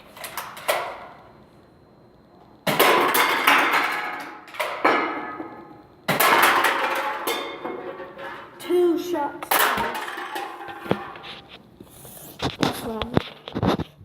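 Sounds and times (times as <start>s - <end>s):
cans crashing down: 2.6s - 11.4s
cans tumbling and rolling: 2.7s - 11.5s.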